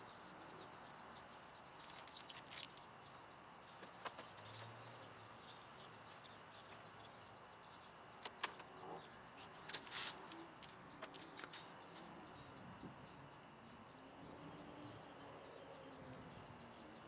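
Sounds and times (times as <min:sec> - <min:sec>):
sharp clicks of wire handling: 0:00.9 - 0:02.9, 0:05.4 - 0:08.8, 0:09.4 - 0:12.1.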